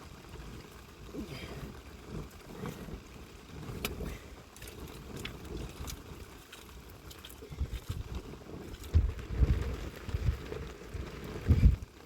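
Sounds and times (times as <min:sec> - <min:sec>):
wind buffeting microphone: 0:07.5 - 0:12.0.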